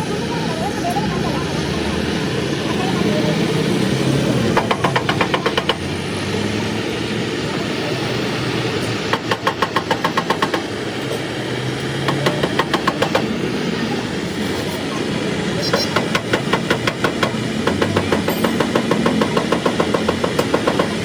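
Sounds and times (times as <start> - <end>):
engine rumble: 0.0 - 21.0
rapid tapping: 4.5 - 5.9, 15.6 - 21.0.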